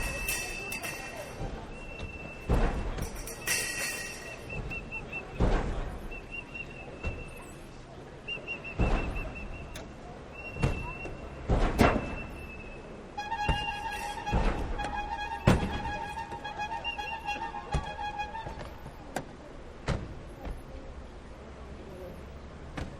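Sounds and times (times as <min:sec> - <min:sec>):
high whistle trilling: 0:00.0 - 0:02.5, 0:03.3 - 0:05.4, 0:06.1 - 0:07.4, 0:08.3 - 0:11.2, 0:12.0 - 0:18.6
heavy thump: 0:00.0 - 0:06.2, 0:08.8 - 0:09.8, 0:10.5 - 0:12.4, 0:13.3 - 0:16.5, 0:17.5 - 0:20.7.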